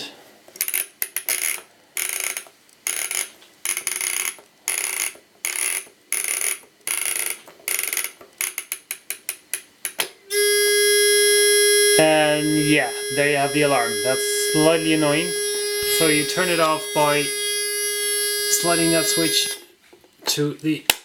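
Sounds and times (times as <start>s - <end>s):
alarm buzzer: 10.2s - 19.6s
mechanical rasping strokes: 10.3s - 19.6s.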